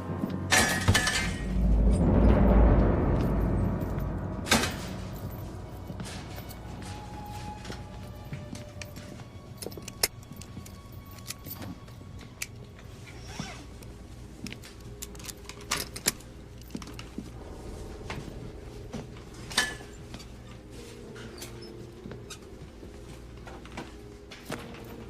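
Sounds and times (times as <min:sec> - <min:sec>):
faint background music: 0:00.0 - 0:25.0
low steady hum: 0:00.0 - 0:25.0
metallic clinks and knocks: 0:08.3 - 0:12.6.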